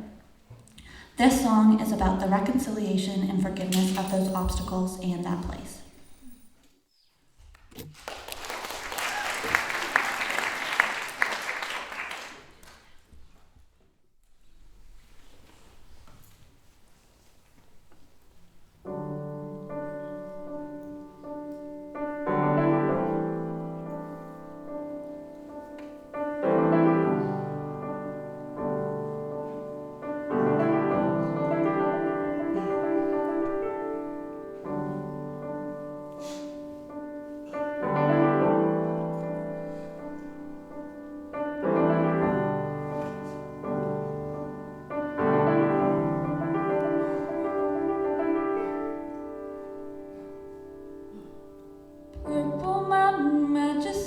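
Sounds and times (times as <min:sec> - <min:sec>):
solo piano chords: 0:18.8 - 0:54.0.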